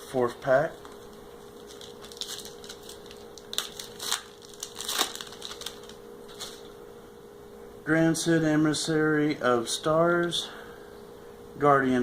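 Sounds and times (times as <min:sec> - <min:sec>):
faint steady hum: 0:00.0 - 0:12.0
foil wrapper crinkling and ripping: 0:00.8 - 0:06.7.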